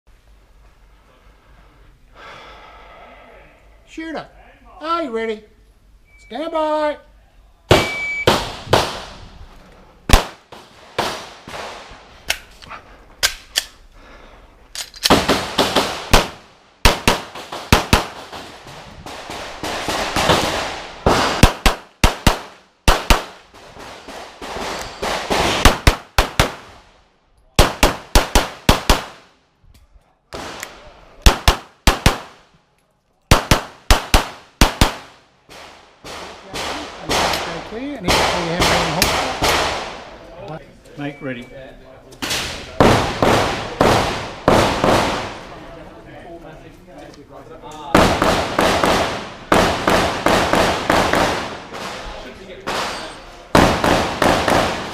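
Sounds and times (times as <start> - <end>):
pistol shots: 10.1 - 12.4, 15.0 - 18.6, 19.4 - 23.4, 24.0 - 26.7, 27.6 - 29.3, 30.4 - 32.4, 33.3 - 40.0, 48.0 - 52.1, 52.7 - 54.9.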